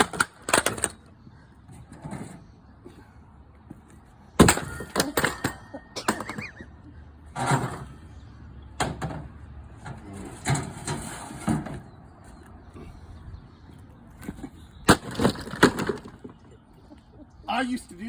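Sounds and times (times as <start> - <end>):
wood pieces cracking and clattering: 14.9 - 16.4.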